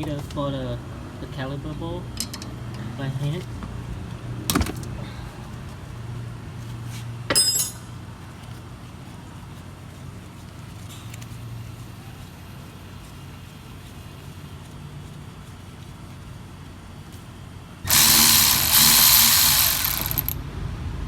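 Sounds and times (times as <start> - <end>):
metal tool clinking on metal: 7.3 - 7.9.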